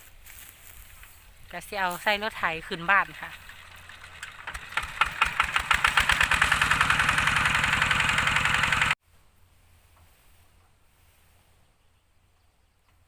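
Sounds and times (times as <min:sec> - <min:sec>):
diesel engine starting up: 0:02.4 - 0:09.0.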